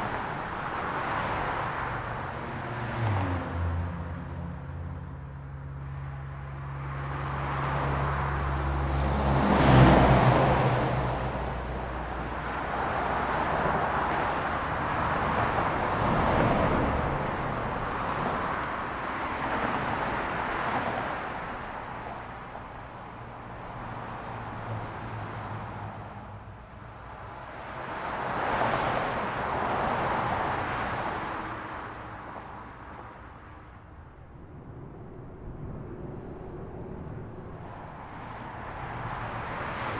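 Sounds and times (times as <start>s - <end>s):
vehicles passing: 0.0s - 39.9s
low engine drone: 33.9s - 39.4s.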